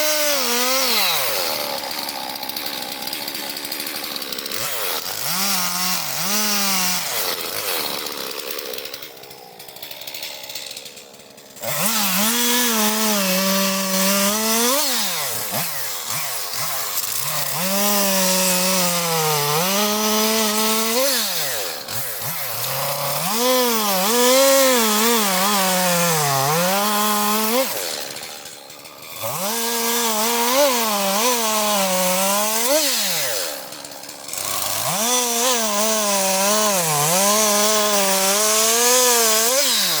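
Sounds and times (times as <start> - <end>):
chainsaw cutting logs: 0.0 - 40.0.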